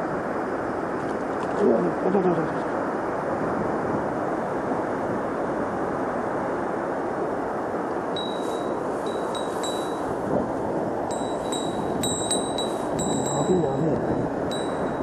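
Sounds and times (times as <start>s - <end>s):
stream water rushing: 0.1s - 15.0s
high thin tone: 8.2s - 10.1s, 11.1s - 15.0s.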